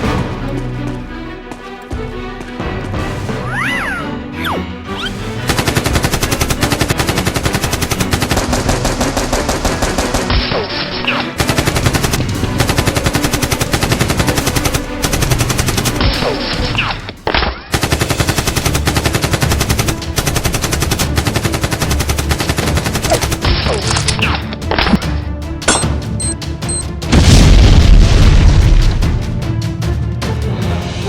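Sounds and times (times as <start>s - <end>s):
automatic gunfire bursts: 5.5s - 10.4s, 11.3s - 16.6s, 17.7s - 23.9s.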